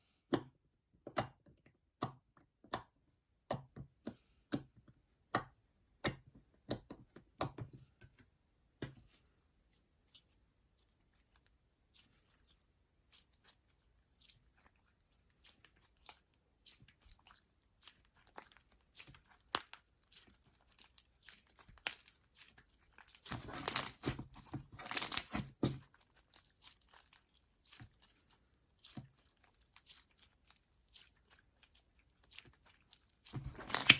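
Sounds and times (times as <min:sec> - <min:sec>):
slime crackling: 0:12.1 - 0:33.9
slime clicking and popping: 0:23.3 - 0:25.8, 0:33.3 - 0:33.9.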